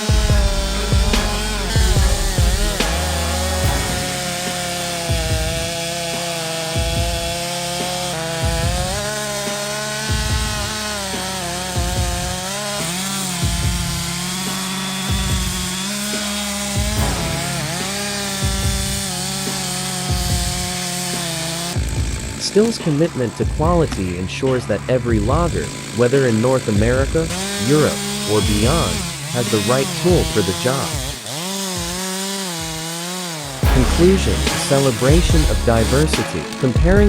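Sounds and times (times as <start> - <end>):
background music with low beat: 0.0 - 26.0, 33.6 - 37.0
chainsaw cutting wood: 0.0 - 37.0.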